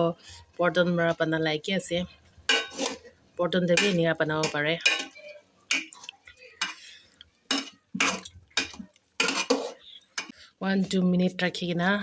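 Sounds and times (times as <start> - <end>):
spoon scraping and clinking in pot: 2.4 - 3.1, 3.7 - 10.4.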